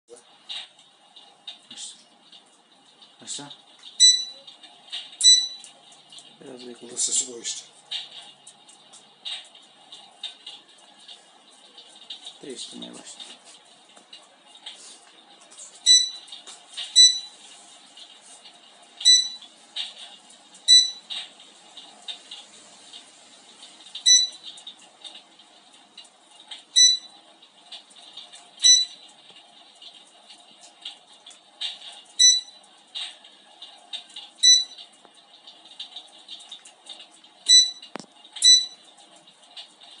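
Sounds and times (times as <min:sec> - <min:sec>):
soft fire crackle effect: 0:00.1 - 0:40.0
short high electronic beeps: 0:04.0 - 0:04.4, 0:05.2 - 0:05.7, 0:15.9 - 0:16.2, 0:17.0 - 0:17.3, 0:19.1 - 0:19.4, 0:20.7 - 0:21.0, 0:24.1 - 0:24.4, 0:26.8 - 0:27.1, 0:28.6 - 0:29.0, 0:32.2 - 0:32.6, 0:34.4 - 0:34.8, 0:37.5 - 0:37.8, 0:38.4 - 0:38.8.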